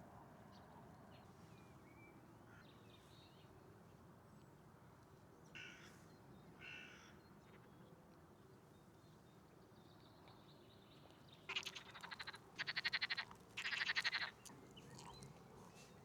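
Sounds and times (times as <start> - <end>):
faint outdoor background noise: 0.0 - 16.0
bird harsh calls: 11.5 - 15.2.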